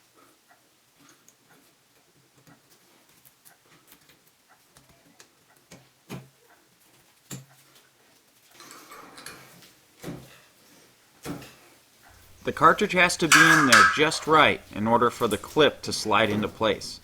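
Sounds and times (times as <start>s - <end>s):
small parts clicking and tapping: 12.2s - 16.8s
loud knocks: 13.2s - 14.3s.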